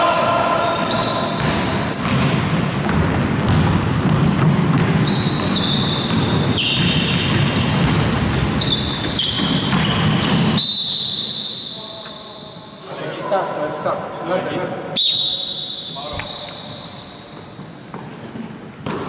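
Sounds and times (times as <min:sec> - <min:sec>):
players' voices echoing: 0:00.0 - 0:05.0, 0:06.6 - 0:17.8
sneakers squeaking on court: 0:00.0 - 0:12.7, 0:14.6 - 0:19.0
basketball bouncing: 0:01.3 - 0:10.6.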